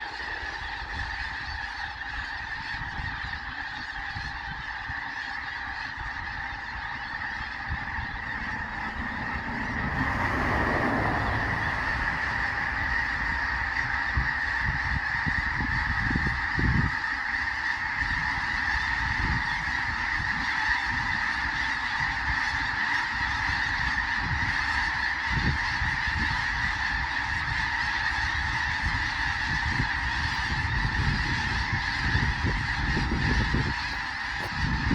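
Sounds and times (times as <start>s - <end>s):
flock of geese honking: 0.0s - 34.9s.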